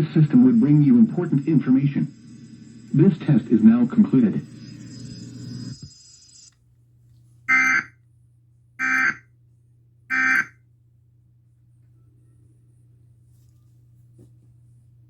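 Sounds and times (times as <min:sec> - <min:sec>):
buzzy data bursts: 0:00.7 - 0:06.5, 0:07.5 - 0:07.9, 0:08.8 - 0:09.2, 0:10.1 - 0:10.5.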